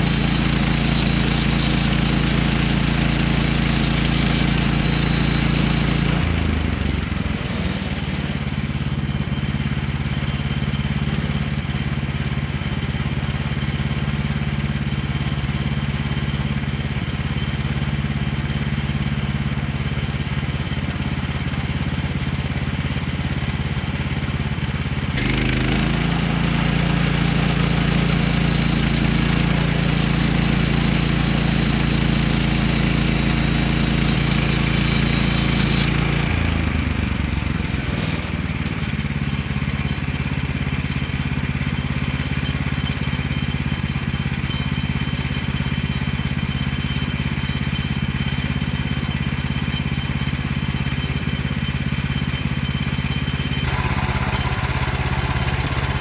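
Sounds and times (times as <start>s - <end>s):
sawmill engine running: 0.0s - 13.6s, 20.3s - 41.6s, 53.6s - 56.0s.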